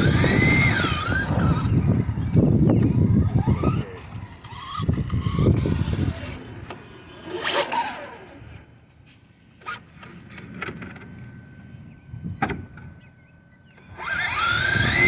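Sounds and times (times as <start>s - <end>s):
electric motor revving: 0.0s - 8.8s, 13.9s - 15.0s
tires spinning: 0.0s - 8.9s, 13.9s - 15.0s.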